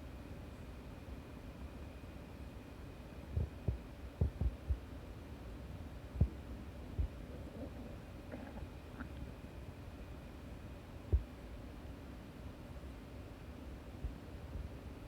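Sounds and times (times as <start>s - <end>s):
faint steady hum: 0.0s - 15.0s
stomach gurgling: 6.2s - 9.4s.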